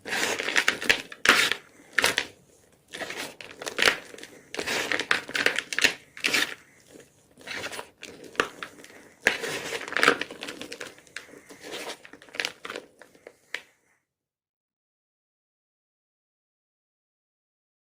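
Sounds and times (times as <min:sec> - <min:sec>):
chalk crushed by hand: 0:00.0 - 0:12.7.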